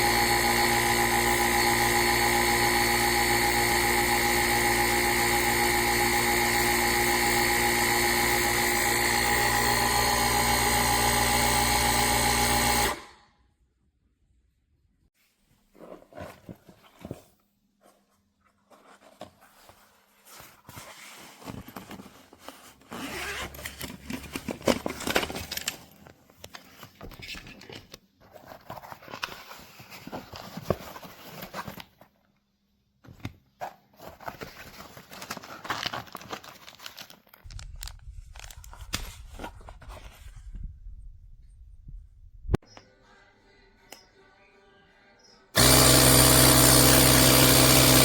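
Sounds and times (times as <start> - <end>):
rustling and handling noises: 15.2 - 40.7.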